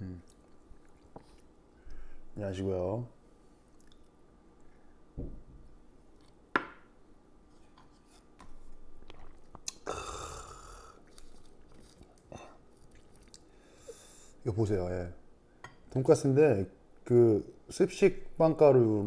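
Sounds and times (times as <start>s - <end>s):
quiet chewing: 0.1s - 2.1s, 3.5s - 5.0s, 9.0s - 10.2s, 10.9s - 14.1s
low thump: 5.2s - 5.5s.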